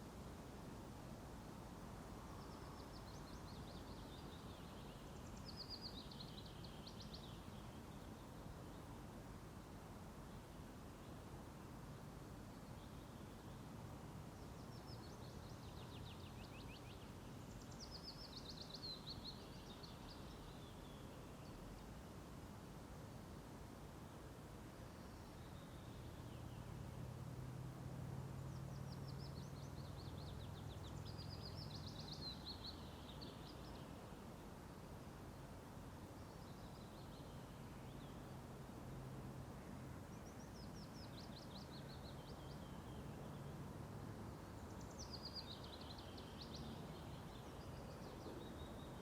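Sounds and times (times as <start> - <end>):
songbird singing: 2.2 - 11.2, 12.3 - 22.2, 24.0 - 49.0.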